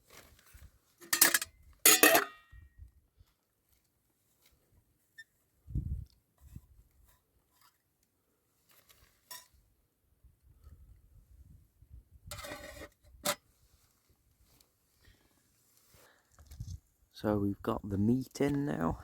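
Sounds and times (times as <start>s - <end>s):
pot and utensils clinking: 1.0s - 2.4s.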